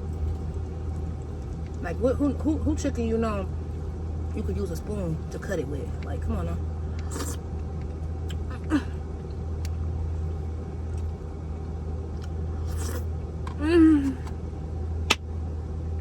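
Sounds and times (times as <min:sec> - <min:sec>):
steady low drone: 0:00.0 - 0:16.0
person humming mmm: 0:13.6 - 0:14.3.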